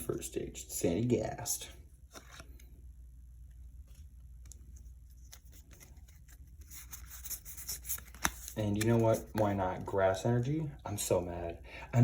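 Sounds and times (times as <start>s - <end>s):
low steady hum: 0.0s - 12.0s
trading cards clicking and sliding: 3.9s - 9.8s.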